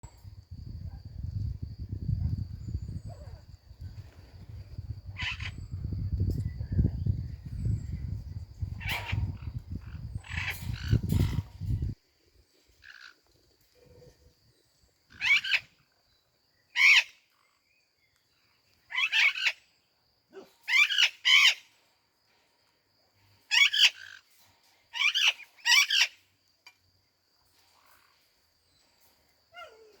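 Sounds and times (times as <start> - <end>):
parrot chirping calls: 15.1 - 15.7, 16.7 - 17.2, 18.9 - 19.6.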